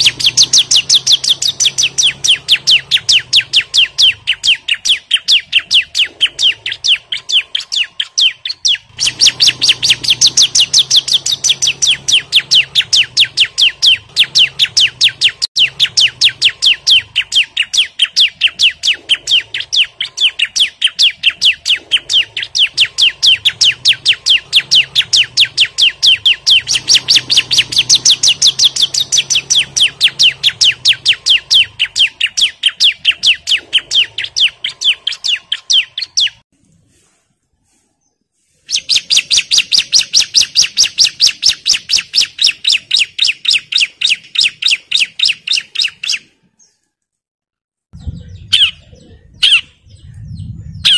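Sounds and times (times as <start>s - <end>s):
bird calling sharp high notes: 0.0s - 36.4s.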